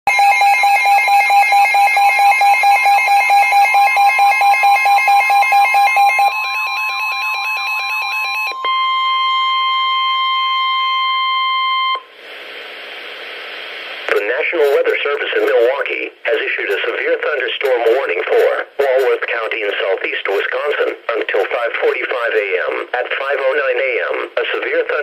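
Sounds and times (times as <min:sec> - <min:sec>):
rapid pulsing alarm beeps: 0:00.1 - 0:12.0
steady warning alarm tone: 0:00.1 - 0:12.0
radio hiss: 0:12.2 - 0:25.0.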